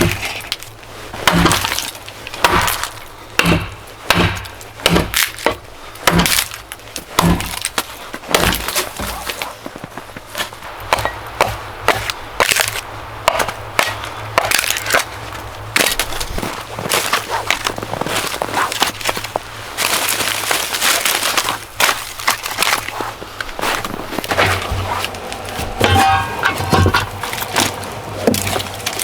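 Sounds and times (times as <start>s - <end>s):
dry wood cracking and splintering: 0.0s - 11.1s, 11.9s - 29.0s.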